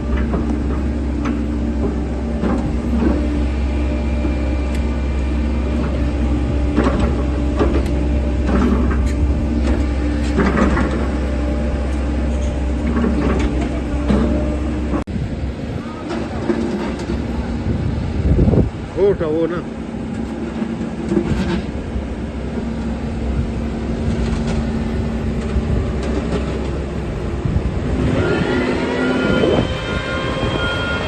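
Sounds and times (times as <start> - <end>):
diesel engine low rumble: 0.0 - 31.0
metal knocks and clanks: 6.7 - 11.3.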